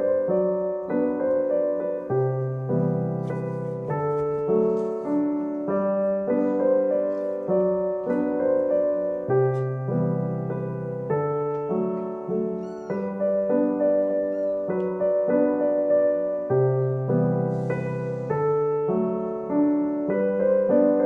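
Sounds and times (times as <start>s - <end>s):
gentle piano music: 0.0s - 21.0s
kitten mewing faintly: 12.6s - 13.1s.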